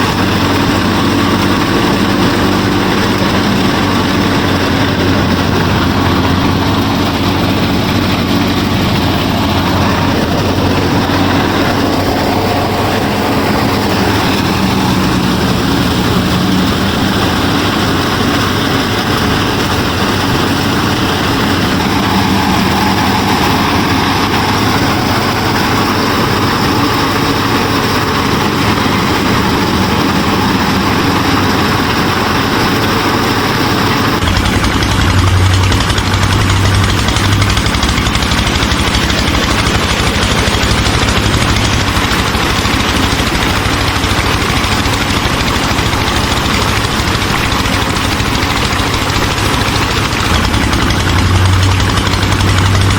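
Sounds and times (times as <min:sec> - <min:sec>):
low hum: 0:00.0 - 0:52.9
machine whirring and rattling: 0:00.0 - 0:52.9.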